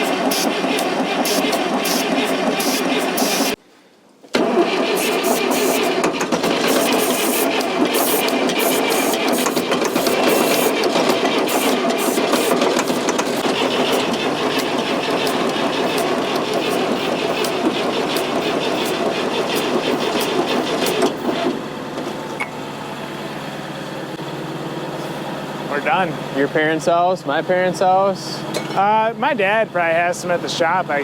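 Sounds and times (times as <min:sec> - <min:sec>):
diesel engine cranking: 0:00.0 - 0:03.6, 0:04.3 - 0:31.0.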